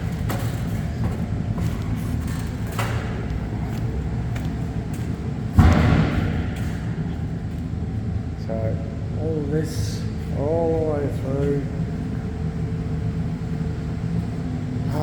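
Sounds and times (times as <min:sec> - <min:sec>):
low mechanical rumble: 0:00.0 - 0:15.0
loud thump: 0:05.5 - 0:07.1.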